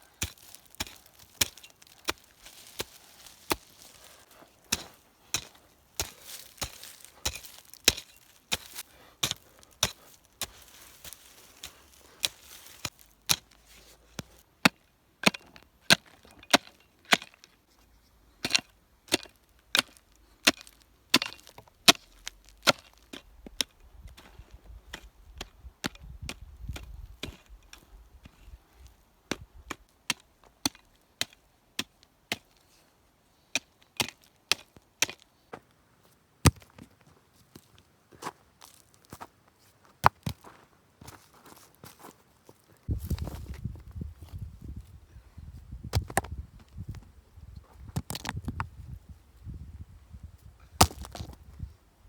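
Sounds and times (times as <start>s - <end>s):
wood chopping strikes: 0.2s - 13.6s, 36.5s - 36.8s, 50.8s - 51.4s.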